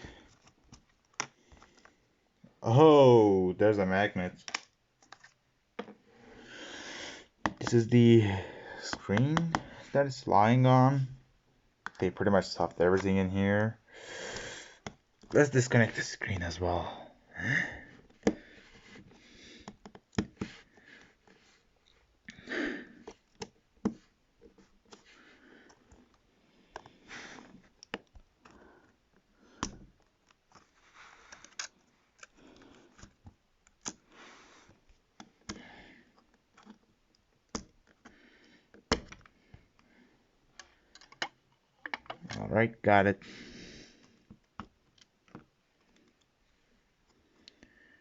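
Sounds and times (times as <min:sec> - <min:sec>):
soft handling noise: 0:03.6 - 0:06.1, 0:07.4 - 0:13.8, 0:14.9 - 0:16.9, 0:22.9 - 0:43.1.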